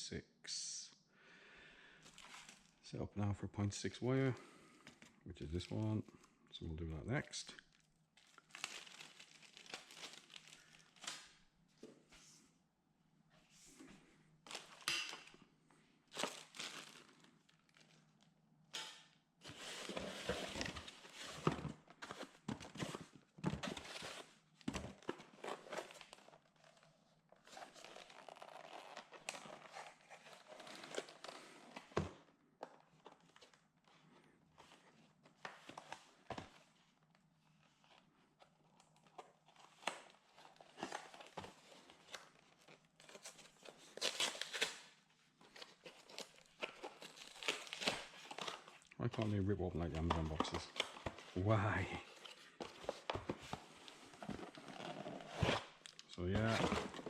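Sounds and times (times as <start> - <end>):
plastic packaging crinkling: 7.7 - 11.4, 16.1 - 18.2, 27.5 - 31.6, 39.5 - 49.0
cardboard tearing: 40.0 - 44.9, 45.5 - 48.8, 54.2 - 55.8.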